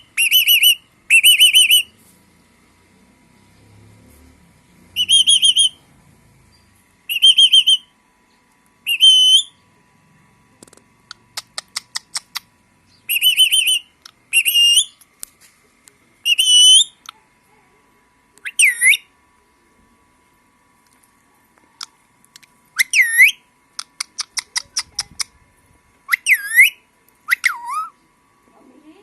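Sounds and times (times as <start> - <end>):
parrot warbling whistles: 0.2 - 1.9, 5.0 - 5.8, 7.1 - 7.9, 8.9 - 9.6, 13.1 - 15.0, 16.3 - 17.0, 18.4 - 19.0, 22.8 - 23.4, 26.1 - 28.0
parrot sharp clicks: 10.6 - 12.5, 23.8 - 25.3.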